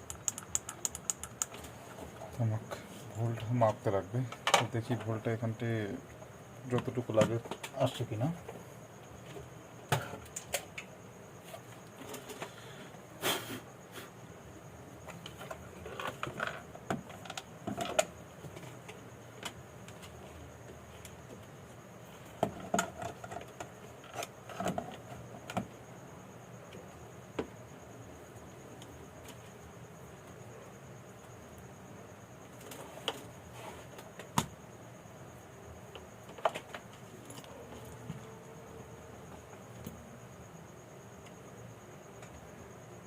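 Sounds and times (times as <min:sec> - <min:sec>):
multimeter probes clicking and tapping: 0:00.0 - 0:01.7.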